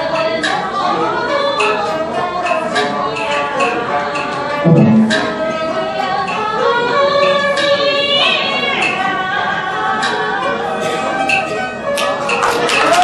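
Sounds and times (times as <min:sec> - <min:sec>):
instrumental accompaniment: 0:04.6 - 0:06.2.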